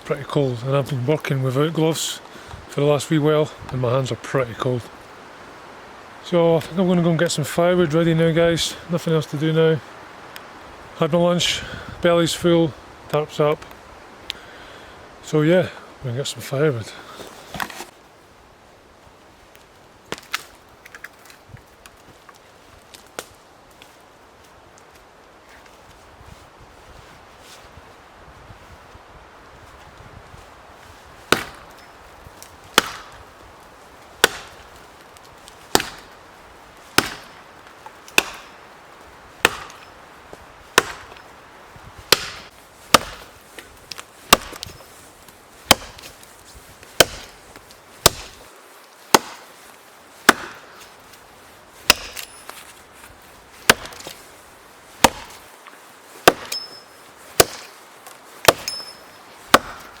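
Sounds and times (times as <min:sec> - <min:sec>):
axe blows chopping wood: 0:31.3 - 0:31.8, 0:32.7 - 0:33.2, 0:34.2 - 0:34.7, 0:35.7 - 0:36.2, 0:36.9 - 0:37.4, 0:38.1 - 0:38.6, 0:39.4 - 0:39.9, 0:40.8 - 0:41.2, 0:42.1 - 0:43.3, 0:44.3 - 0:44.8, 0:45.7 - 0:46.1, 0:47.0 - 0:47.4, 0:48.0 - 0:48.4, 0:49.1 - 0:49.5, 0:50.2 - 0:50.8, 0:51.8 - 0:52.5, 0:53.6 - 0:54.2, 0:55.0 - 0:55.4, 0:56.2 - 0:56.8, 0:57.4 - 0:57.8, 0:58.4 - 1:00.0.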